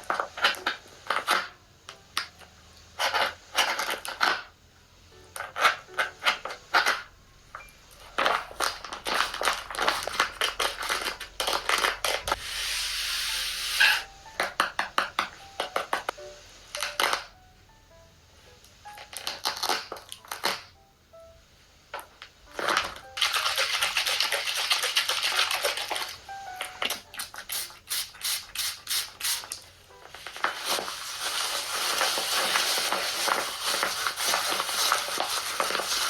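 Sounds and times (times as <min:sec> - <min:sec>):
steady hissing: 0:12.3 - 0:14.0
small hard objects clattering: 0:30.1 - 0:36.0.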